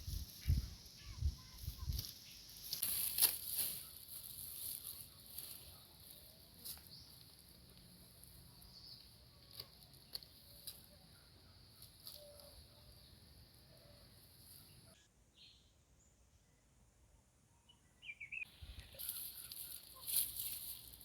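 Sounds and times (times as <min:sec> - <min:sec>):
rustling and scraping of soil: 0:00.0 - 0:11.0, 0:18.5 - 0:21.0.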